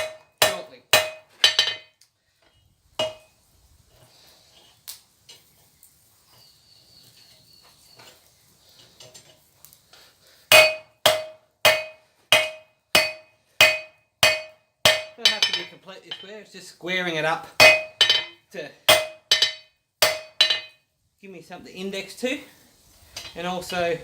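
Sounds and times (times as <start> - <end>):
hammer ringing on anvil: 10.5 - 16.2.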